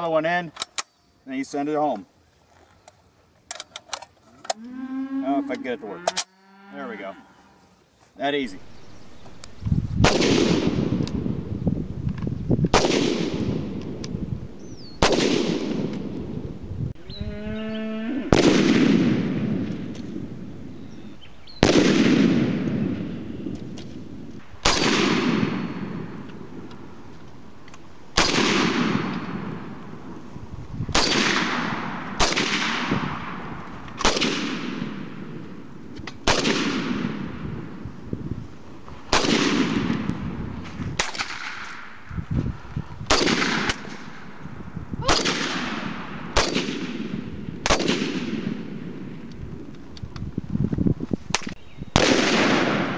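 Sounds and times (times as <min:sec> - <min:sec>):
rifle shots with echo: 0:10.0 - 0:11.3, 0:12.7 - 0:13.8, 0:15.0 - 0:16.2, 0:18.3 - 0:19.9, 0:21.6 - 0:23.3, 0:24.6 - 0:26.5, 0:28.2 - 0:29.8, 0:30.9 - 0:35.6, 0:36.2 - 0:37.7, 0:39.1 - 0:40.1, 0:43.1 - 0:44.3, 0:45.1 - 0:49.1, 0:51.9 - 0:52.9.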